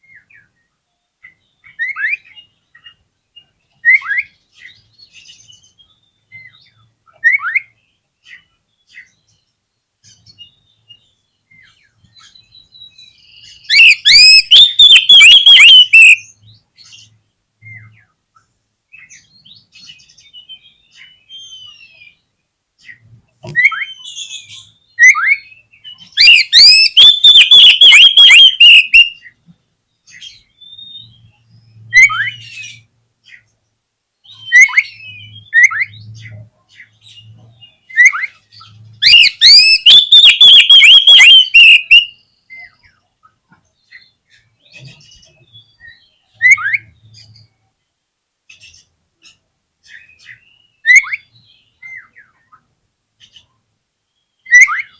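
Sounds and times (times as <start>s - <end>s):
bird whistled chirps: 12.2s - 16.3s, 23.6s - 29.3s, 39.0s - 42.8s
bird rapid repeated notes: 13.8s - 16.2s, 26.3s - 29.1s, 39.1s - 42.1s.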